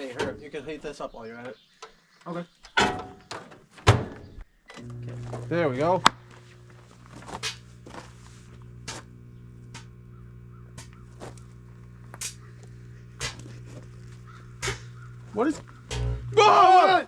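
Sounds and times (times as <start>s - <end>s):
microwave oven hum: 4.7s - 17.0s.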